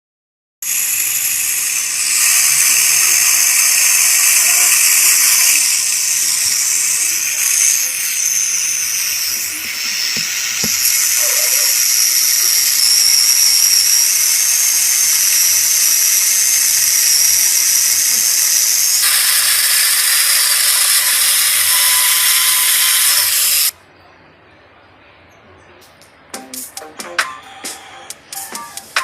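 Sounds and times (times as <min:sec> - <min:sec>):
electric chainsaw motor whine: 0:00.6 - 0:23.8
chain hiss and rattle: 0:00.8 - 0:23.7.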